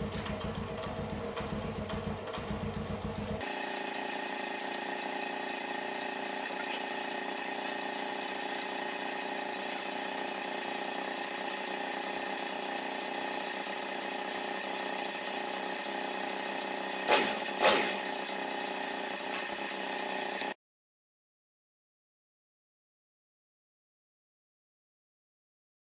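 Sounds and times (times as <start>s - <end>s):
motorbike engine idling: 0.0s - 20.6s.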